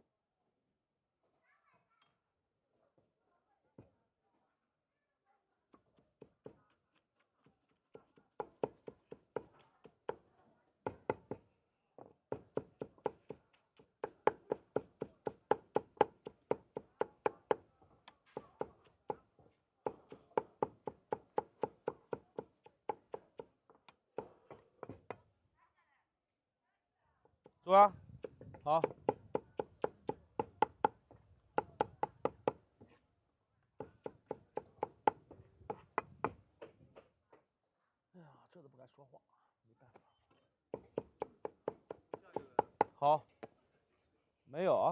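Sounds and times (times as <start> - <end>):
cleaver chopping meat on wooden board: 6.0 - 10.2, 12.3 - 17.6, 19.8 - 23.6, 28.2 - 32.6, 33.8 - 36.7, 40.7 - 43.5.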